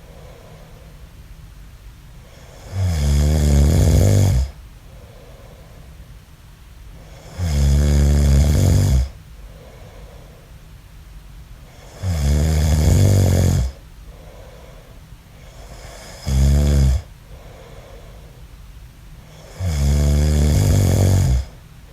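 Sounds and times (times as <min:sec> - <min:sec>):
quiet breathing: 0:00.0 - 0:01.5, 0:02.1 - 0:11.0, 0:11.6 - 0:21.9
man snoring: 0:02.3 - 0:04.6, 0:07.0 - 0:09.2, 0:11.8 - 0:13.8, 0:15.4 - 0:17.7, 0:19.3 - 0:21.6.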